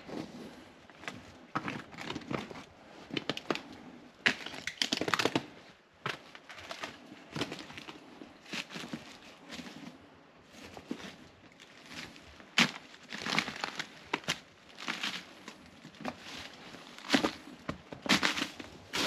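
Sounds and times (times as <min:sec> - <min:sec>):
crampon footsteps crunching on ice: 0:11.7 - 0:19.0.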